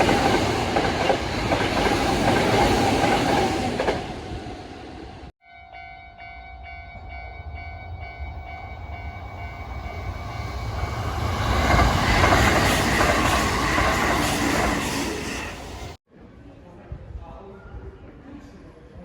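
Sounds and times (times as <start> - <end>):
train wheels clattering on rails: 0.0 - 4.2, 8.9 - 16.0
steady ringing tone: 5.4 - 11.3.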